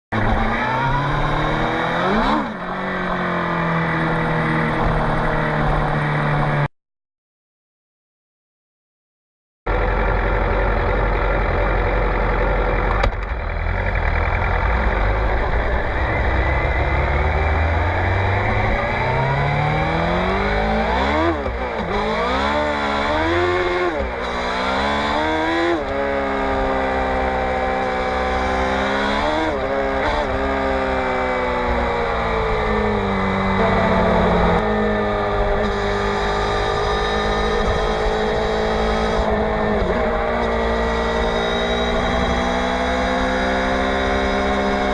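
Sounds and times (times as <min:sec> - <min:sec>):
motorcycle engine revving: 0:00.1 - 0:06.6, 0:12.8 - 0:44.9.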